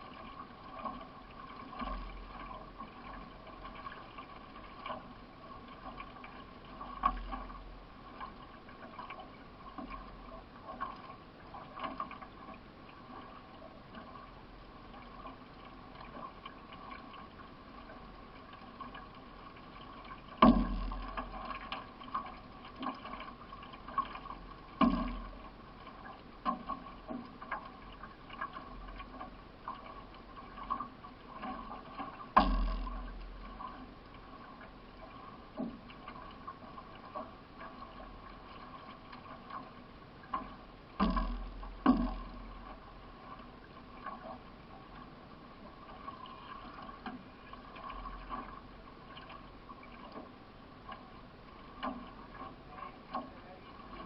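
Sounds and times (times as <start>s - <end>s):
paddle strokes in water: 0.0s - 54.0s
water washing along hull: 0.0s - 54.0s
knocks against boat: 20.4s - 21.7s, 24.2s - 25.4s, 31.4s - 33.7s, 40.3s - 42.8s.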